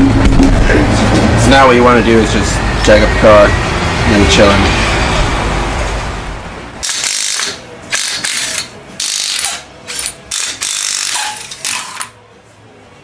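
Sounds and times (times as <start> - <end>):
ratchet wrench clicking: 6.8 - 12.2.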